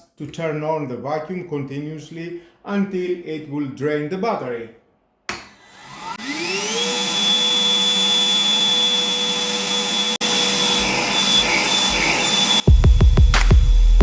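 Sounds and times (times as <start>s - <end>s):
vacuum cleaner running: 5.3s - 14.0s
electronic music with a beat: 12.6s - 14.0s.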